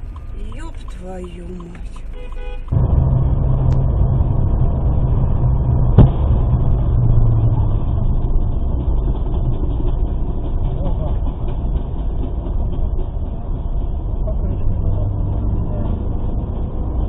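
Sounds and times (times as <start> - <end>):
vehicle road and engine noise: 0.0 - 17.0
tyre bursting bang: 5.8 - 8.0.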